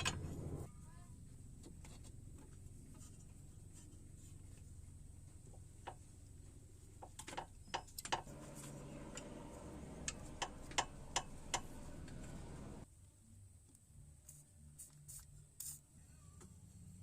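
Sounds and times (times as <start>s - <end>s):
steady hum: 0.0s - 0.7s, 8.2s - 12.8s.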